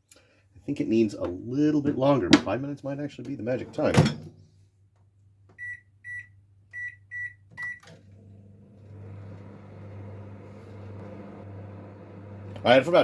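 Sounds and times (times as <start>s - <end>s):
microwave keypad beeping: 5.6s - 7.8s
microwave oven humming: 7.9s - 13.0s.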